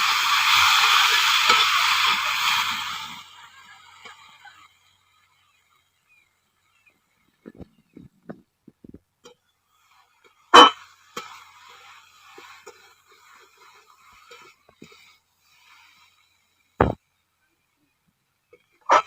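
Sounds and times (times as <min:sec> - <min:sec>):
frying sizzle: 0:00.0 - 0:05.8.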